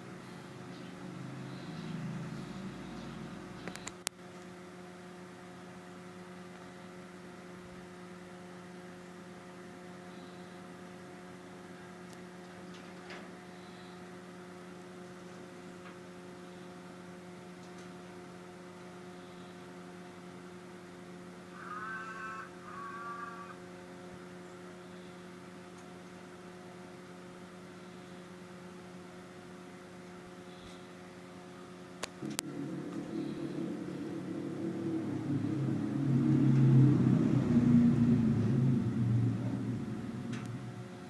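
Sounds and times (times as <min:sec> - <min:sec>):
electrical hum: 0:00.0 - 0:41.0
wavering high-pitched sound: 0:32.2 - 0:41.0.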